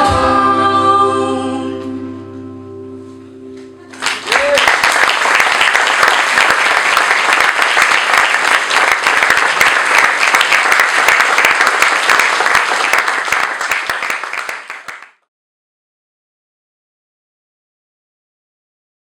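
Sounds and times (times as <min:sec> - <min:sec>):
audience applauding: 0:03.9 - 0:15.2.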